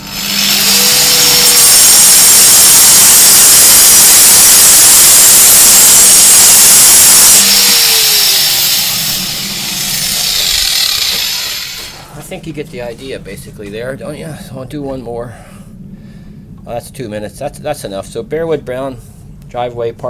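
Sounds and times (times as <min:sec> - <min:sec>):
power saw grinding concrete: 0:00.0 - 0:12.1
saw motor winding down whine: 0:00.0 - 0:12.1.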